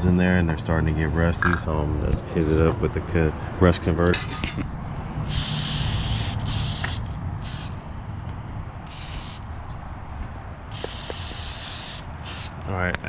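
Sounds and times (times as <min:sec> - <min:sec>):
aerosol can spraying: 0:05.3 - 0:07.8, 0:08.9 - 0:09.5, 0:10.7 - 0:12.6.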